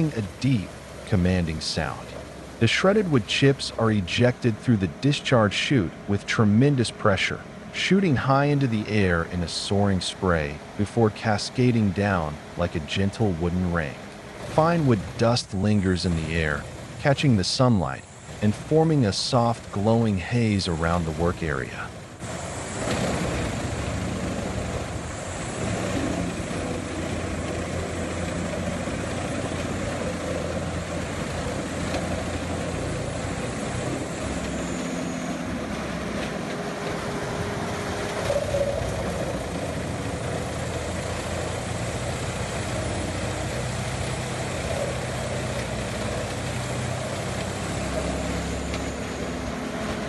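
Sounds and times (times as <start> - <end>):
wood chipper running: 11.6 - 50.0.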